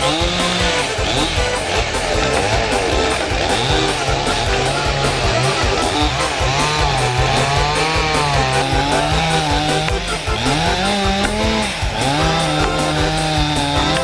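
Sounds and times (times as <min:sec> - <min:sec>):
chainsaw cutting wood: 0:00.0 - 0:14.0.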